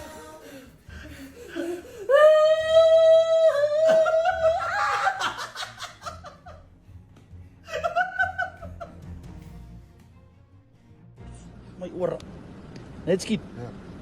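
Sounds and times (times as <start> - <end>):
person shrieking: 2.1 - 5.4
person laughing: 3.8 - 6.6.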